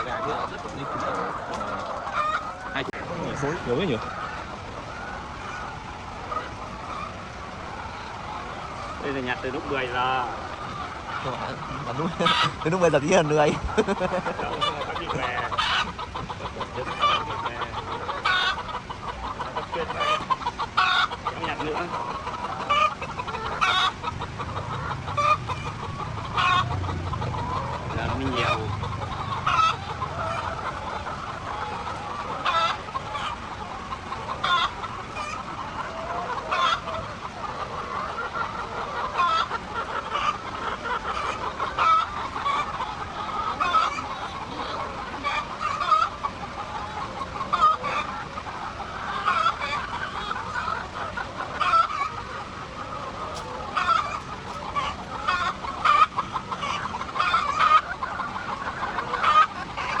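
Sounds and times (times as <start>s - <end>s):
hens clucking and squawking: 0.0s - 60.0s.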